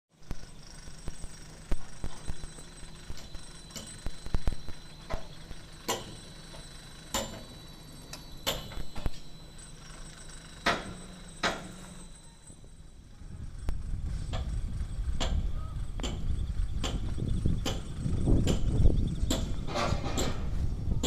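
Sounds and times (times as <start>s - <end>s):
low steady rumble: 0.1s - 21.0s
sharp knocks and clanks: 3.2s - 7.6s, 10.6s - 11.9s, 15.2s - 15.4s, 16.0s - 20.6s.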